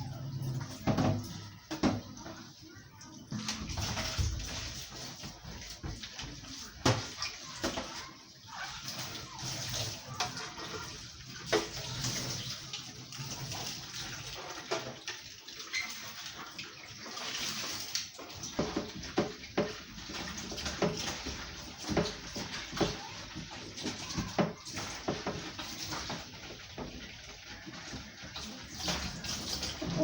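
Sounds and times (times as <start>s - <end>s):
water running from tap: 0.0s - 30.0s
dishes knocking and clattering: 0.1s - 2.5s, 3.3s - 8.0s, 18.3s - 30.0s.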